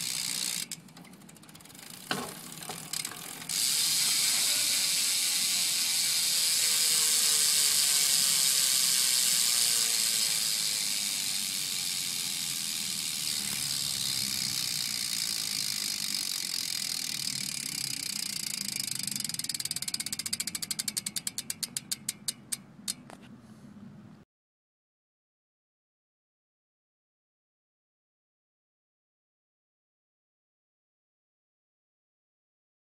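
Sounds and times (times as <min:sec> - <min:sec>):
bike hub ratchet buzz: 0:00.0 - 0:23.1.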